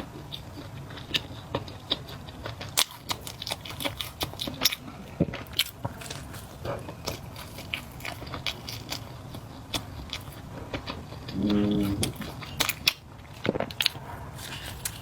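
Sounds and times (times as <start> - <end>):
wet chewing mouth sounds: 0.0 - 15.0
person humming: 11.4 - 12.1.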